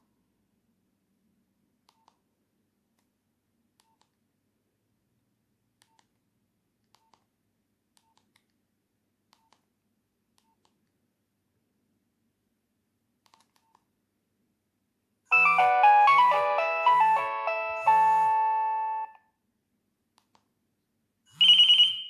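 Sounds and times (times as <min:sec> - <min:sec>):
polyphonic ringtone melody: 0:15.3 - 0:19.2.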